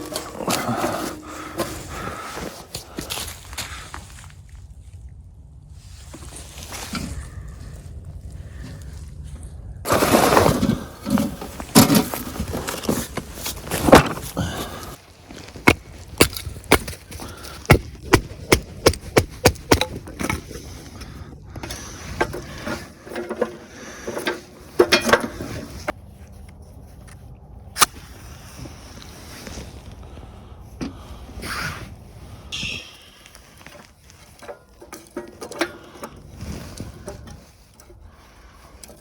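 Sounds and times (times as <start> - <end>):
dry wood crackling and splintering: 6.0 - 26.5
wood cracks and knocks: 15.4 - 20.4.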